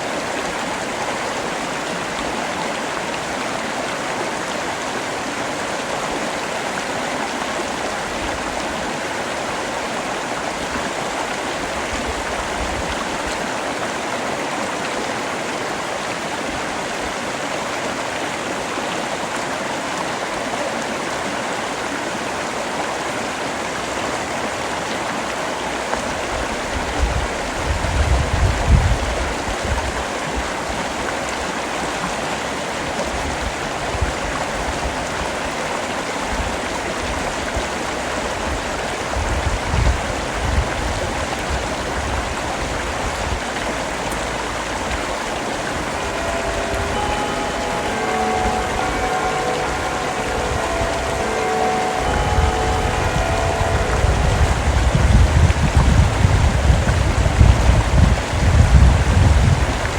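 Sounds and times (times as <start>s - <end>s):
heavy rain falling: 40.1s - 59.9s.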